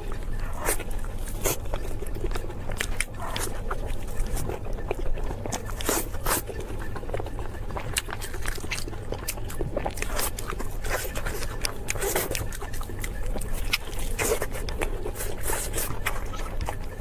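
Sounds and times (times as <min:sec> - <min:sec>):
crispy food crunching: 0:00.0 - 0:17.0
low steady hum: 0:00.0 - 0:17.0.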